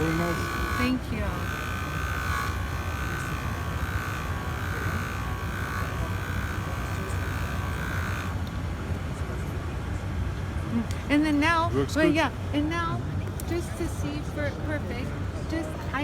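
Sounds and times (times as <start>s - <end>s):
polishing machine whine: 0.0s - 9.8s.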